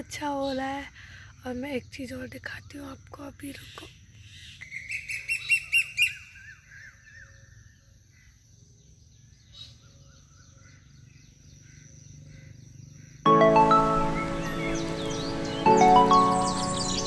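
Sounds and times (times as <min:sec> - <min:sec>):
birds calling: 0:13.3 - 0:17.0.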